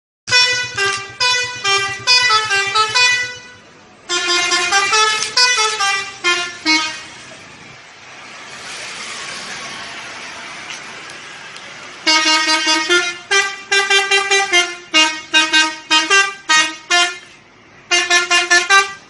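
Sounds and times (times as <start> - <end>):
bus horn playing melody: 0.3 - 7.3, 12.0 - 19.0.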